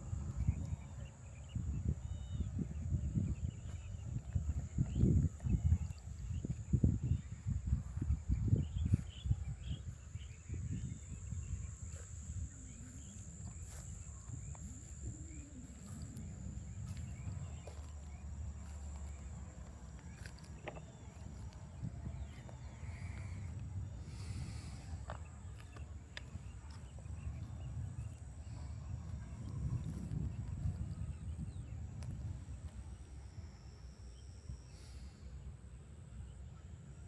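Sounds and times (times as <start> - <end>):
high-pitched insect drone: 9.5 - 19.4.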